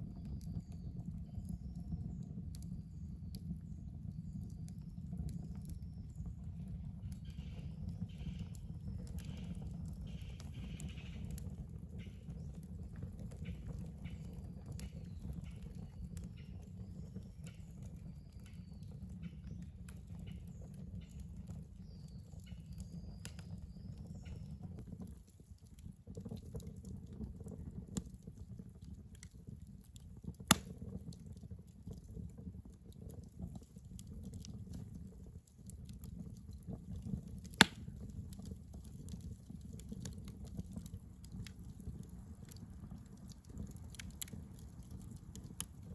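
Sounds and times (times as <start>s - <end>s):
fire popping: 0.0s - 45.9s
wood fire crackling: 0.0s - 45.9s.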